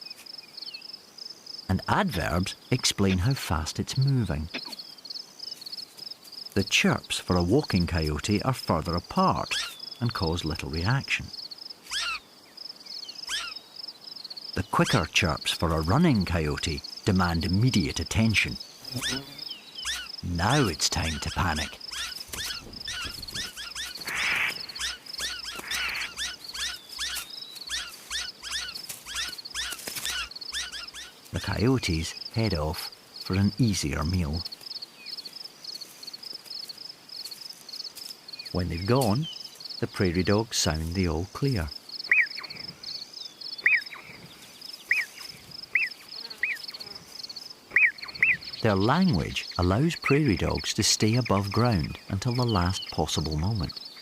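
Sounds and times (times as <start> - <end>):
insect trill: 0.0 - 54.0
prairie dogs chirping: 0.0 - 54.0
prairie dog alarm chirps: 9.4 - 10.0, 11.9 - 12.3, 13.1 - 13.7, 18.8 - 31.2, 42.0 - 47.0, 47.7 - 53.0.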